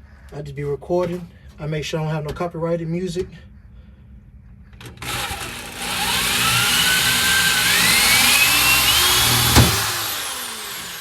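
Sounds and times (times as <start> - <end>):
power drill motor whine: 4.9 - 11.0.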